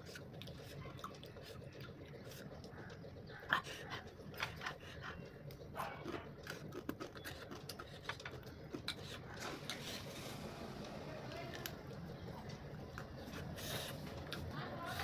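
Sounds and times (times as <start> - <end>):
person chewing crunchily: 0.0 - 10.1.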